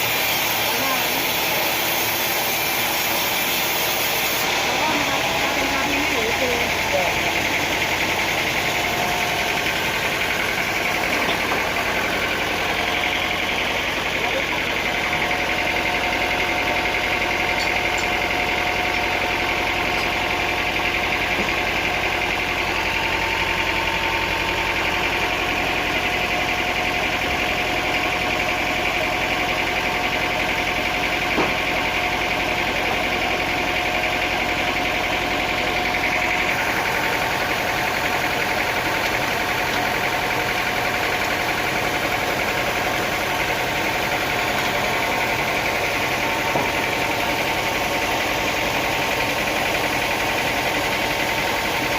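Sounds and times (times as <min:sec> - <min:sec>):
sawmill machinery drone: 0:00.0 - 0:51.9.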